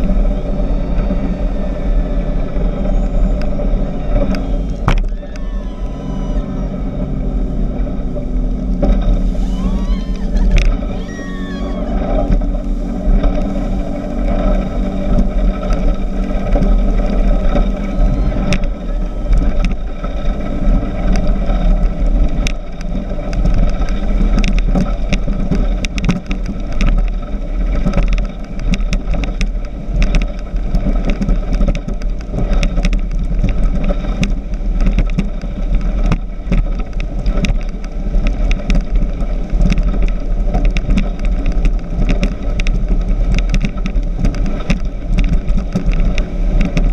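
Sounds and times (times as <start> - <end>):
speedboat engine drone: 0.0 - 46.9
wind rumble on microphone: 0.0 - 46.9.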